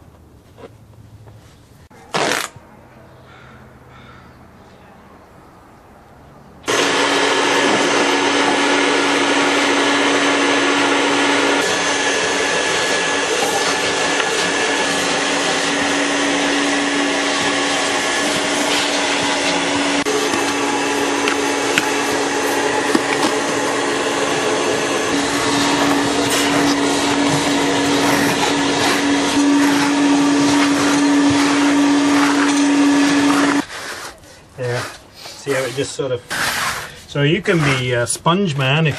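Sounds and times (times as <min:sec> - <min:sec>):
vacuum cleaner running: 0:06.6 - 0:33.7.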